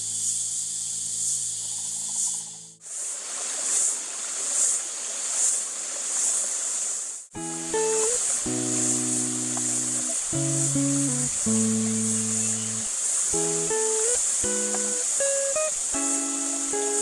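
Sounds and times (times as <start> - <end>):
insect chorus: 0.0 - 17.0
creek water rushing over rocks: 2.9 - 17.0
guitar music: 7.4 - 17.0.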